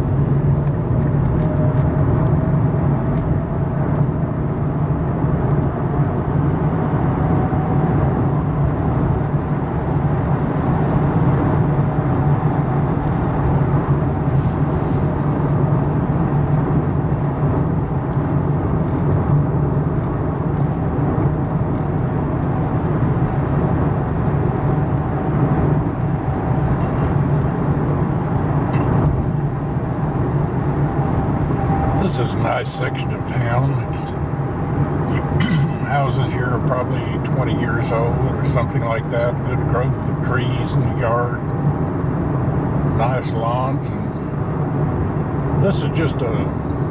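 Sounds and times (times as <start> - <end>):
car cabin road and engine drone: 0.0 - 46.9.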